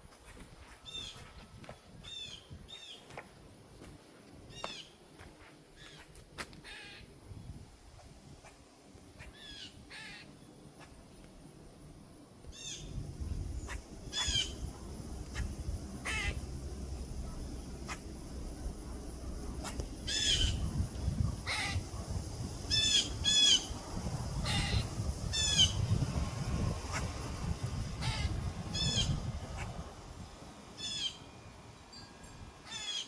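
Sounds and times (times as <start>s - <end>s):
harsh crow-like bird calls: 6.6s - 7.1s, 9.2s - 10.4s, 13.7s - 14.6s, 15.3s - 16.5s, 19.6s - 20.8s, 21.4s - 21.9s, 24.4s - 25.8s, 28.0s - 29.7s, 30.8s - 31.3s, 32.6s - 33.0s.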